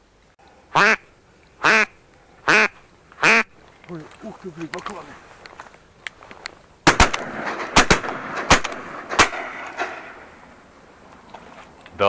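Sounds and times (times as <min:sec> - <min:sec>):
shotguns firing: 0:06.8 - 0:10.6
gunshot echoes: 0:06.9 - 0:10.3.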